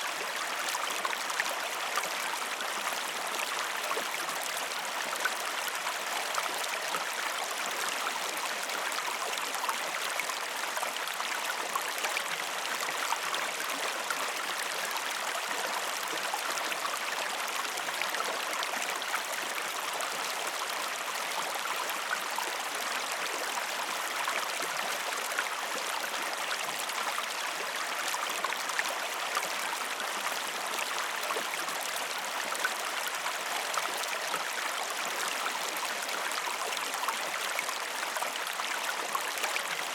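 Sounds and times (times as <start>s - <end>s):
river flowing over stones: 0.0s - 39.9s.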